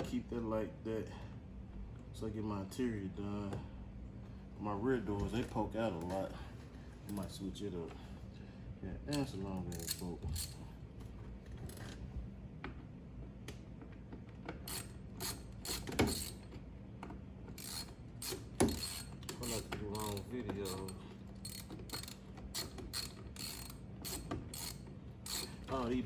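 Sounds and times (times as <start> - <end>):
hand ratchet clicking: 9.1 - 10.6, 14.5 - 16.5, 17.5 - 26.0.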